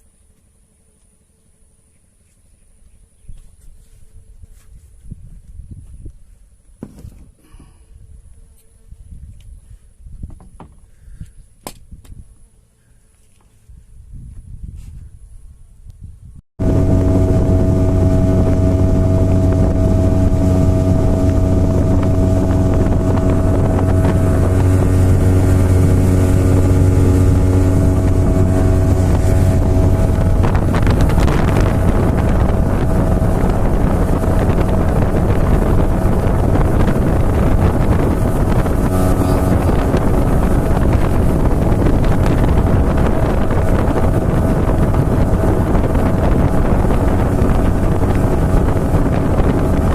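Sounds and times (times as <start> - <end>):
wind buffeting microphone: 4.2 - 8.2, 8.9 - 12.3, 13.7 - 49.9
small engine running: 16.6 - 49.9.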